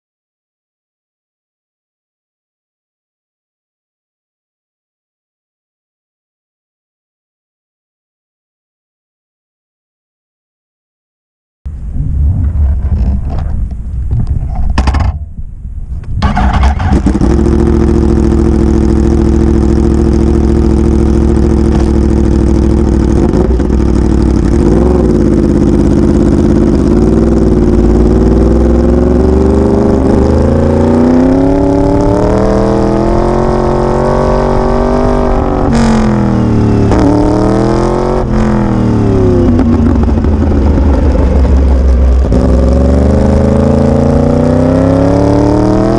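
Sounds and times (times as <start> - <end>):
motorcycle engine revving: 16.2 - 45.9.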